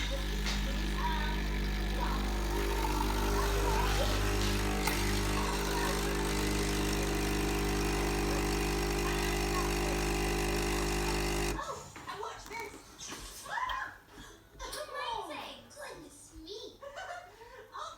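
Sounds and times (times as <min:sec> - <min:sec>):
coffee machine pump humming: 0:00.0 - 0:11.6.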